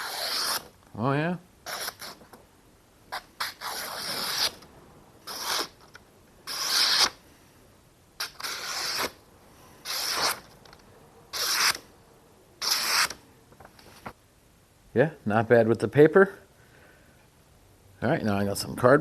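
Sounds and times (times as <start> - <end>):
knife slicing through paper: 5.3 - 5.8.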